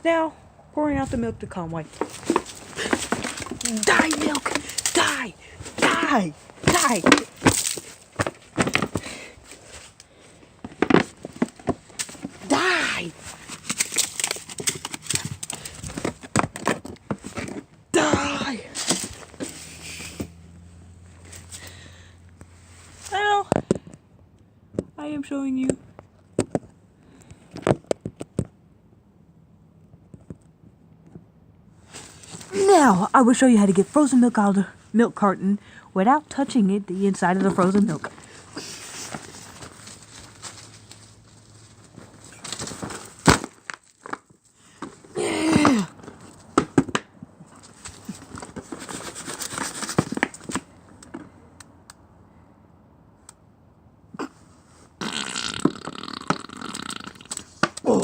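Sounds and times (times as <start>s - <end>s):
milk carton crackling and clicking: 13.3s - 17.6s.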